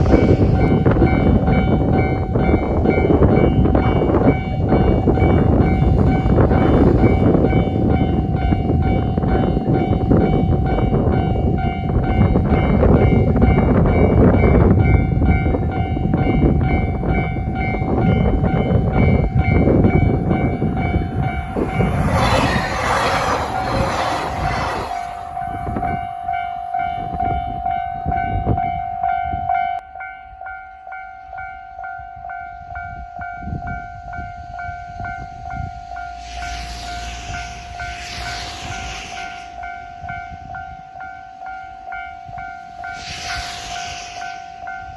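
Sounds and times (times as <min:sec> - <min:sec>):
passing train rumbling: 0:00.0 - 0:44.9.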